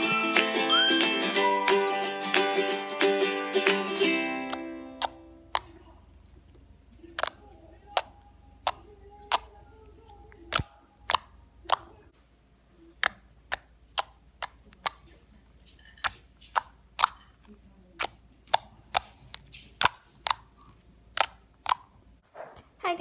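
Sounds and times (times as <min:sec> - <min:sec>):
slime clicking and popping: 0:04.0 - 0:12.0, 0:12.9 - 0:22.0
faint low hum: 0:04.2 - 0:23.0.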